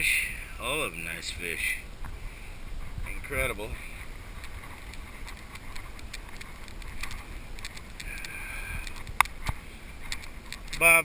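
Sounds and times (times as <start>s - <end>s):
low rumbling background noise: 0.0s - 11.0s
faint clicks: 4.4s - 10.9s.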